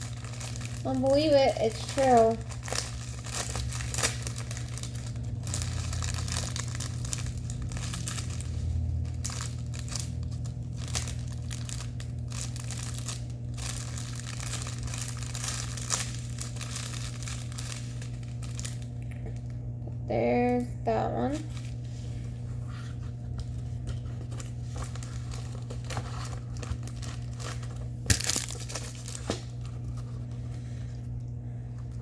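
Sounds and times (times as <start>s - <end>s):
packaging crinkling: 0.0s - 19.8s, 23.1s - 31.2s
steady low hum: 0.0s - 32.0s.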